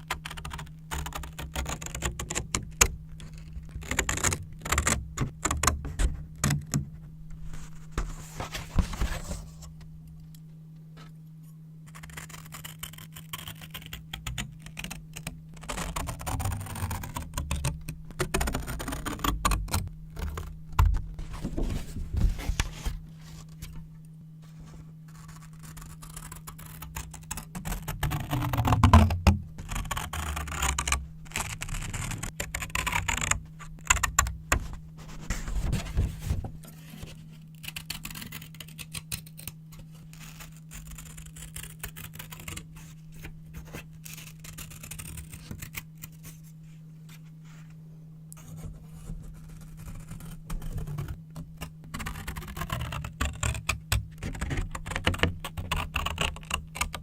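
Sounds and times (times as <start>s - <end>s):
paper crinkling and rustling: 0.1s - 9.9s, 11.9s - 47.7s.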